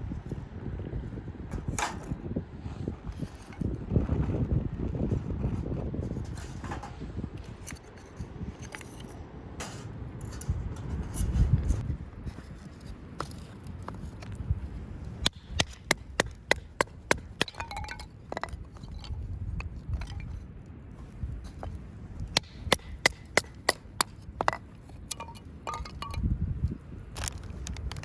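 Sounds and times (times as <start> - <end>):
firewood being chopped: 15.1 - 19.2, 21.5 - 26.3.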